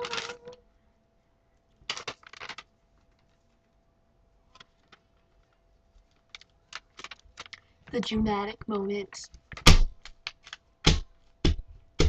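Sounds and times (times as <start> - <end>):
rapid clicking and rustling: 0.0 - 0.6, 1.8 - 3.7, 4.5 - 8.0.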